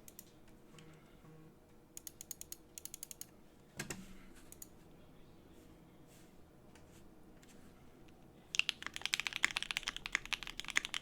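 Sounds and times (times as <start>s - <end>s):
mechanical keyboard typing: 8.5s - 11.0s.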